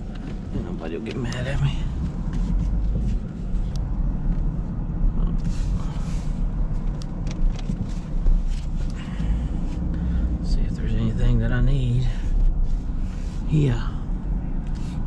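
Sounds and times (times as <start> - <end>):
engine running low rumble: 0.0 - 15.0.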